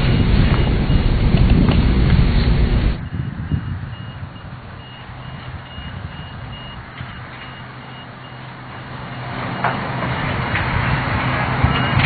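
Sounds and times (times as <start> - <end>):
reversing alarm beeping: 0.0 - 1.1, 3.0 - 10.4, 11.6 - 12.0
low engine hum: 0.0 - 12.0.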